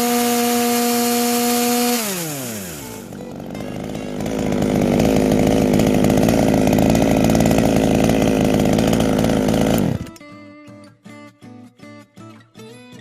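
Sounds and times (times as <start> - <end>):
chainsaw running at high revs: 0.0 - 10.2
acoustic guitar music: 2.8 - 6.5, 10.0 - 13.0.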